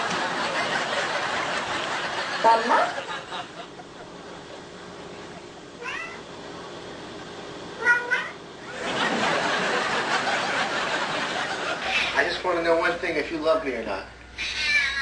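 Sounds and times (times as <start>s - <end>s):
steady noisy hiss: 0.0s - 15.0s
cat meowing: 5.8s - 6.2s, 14.4s - 15.0s.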